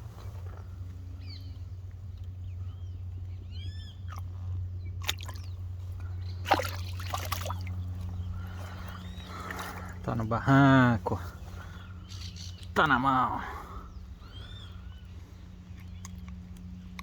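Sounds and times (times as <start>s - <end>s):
steady low hum: 0.0s - 17.0s
bird chirps: 1.2s - 10.6s, 11.4s - 17.0s
fish splashing in water: 5.0s - 10.0s.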